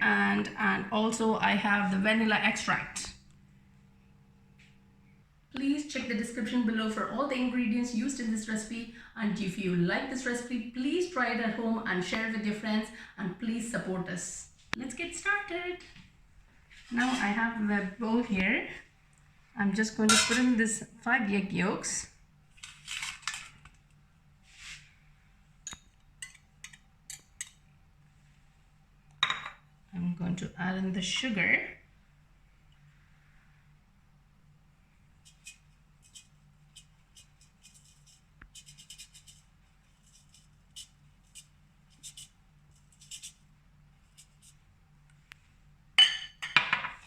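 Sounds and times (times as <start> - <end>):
low steady hum: 0.0 - 47.0
faint soft scraping: 24.4 - 25.0
spoon scraping a bowl: 35.2 - 43.4.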